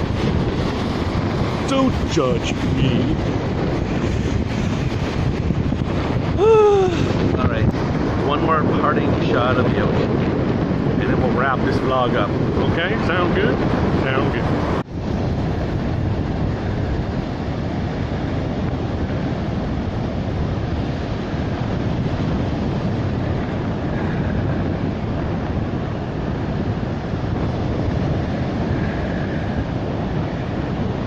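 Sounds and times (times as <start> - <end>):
ocean surf breaking: 0.0 - 31.0
wind buffeting microphone: 0.0 - 31.0.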